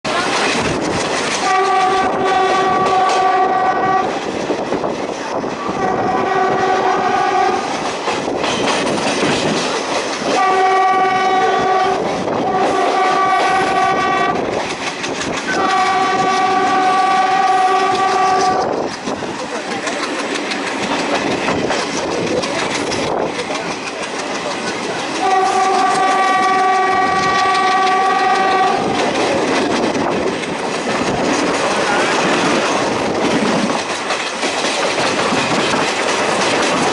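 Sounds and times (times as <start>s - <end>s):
train wheels clickety-clack: 0.1s - 36.9s
locomotive air horn blasts: 1.4s - 4.2s, 5.7s - 7.7s, 10.3s - 14.5s, 15.5s - 18.7s, 25.2s - 29.0s.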